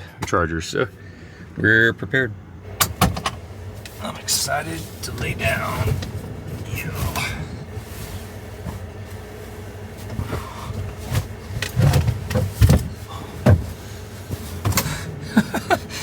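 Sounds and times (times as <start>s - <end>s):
faint steady hum: 0.0s - 16.0s
sharp knocks and dull thumps: 10.1s - 15.0s.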